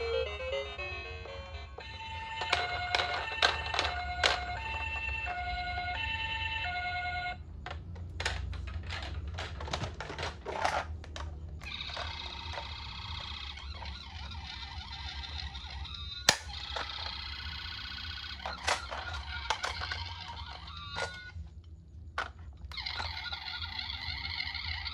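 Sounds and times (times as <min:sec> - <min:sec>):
toy siren electronic tones: 0:00.0 - 0:07.4, 0:11.6 - 0:21.3, 0:22.7 - 0:24.9
warbling toy siren: 0:00.0 - 0:07.4, 0:11.6 - 0:21.4, 0:22.7 - 0:24.9
clicking and rattling: 0:01.8 - 0:05.6, 0:07.6 - 0:17.4, 0:18.0 - 0:21.4, 0:22.1 - 0:23.3.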